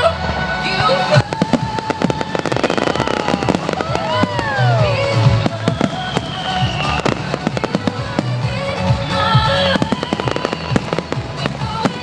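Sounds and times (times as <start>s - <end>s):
music playing: 0.0s - 12.0s
fireworks crackling and banging: 0.2s - 12.0s.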